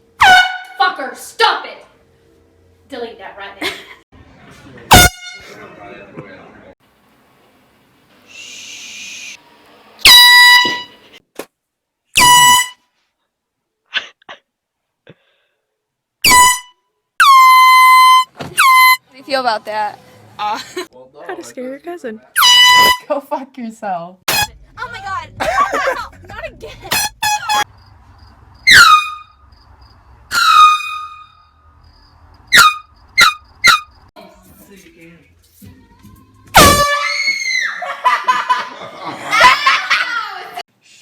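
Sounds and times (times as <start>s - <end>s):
air horn blasts: 0.2s - 0.8s, 4.9s - 5.6s, 10.0s - 11.2s, 12.2s - 12.8s, 16.2s - 19.1s, 22.4s - 23.1s, 24.3s - 27.7s, 30.3s - 31.4s, 36.5s - 37.3s.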